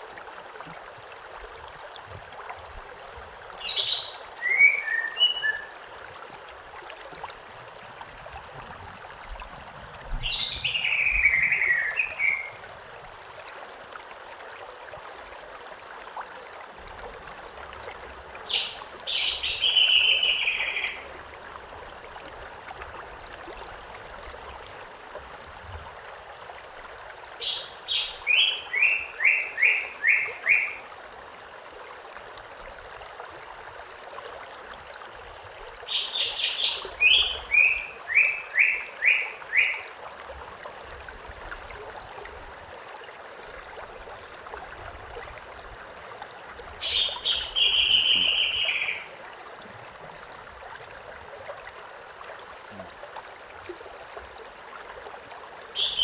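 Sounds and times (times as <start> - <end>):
stream rushing: 0.0 - 56.0
songbird singing: 3.6 - 5.8, 10.2 - 12.6, 18.5 - 21.1, 27.4 - 30.8, 35.9 - 39.9, 46.8 - 49.2, 55.8 - 56.0.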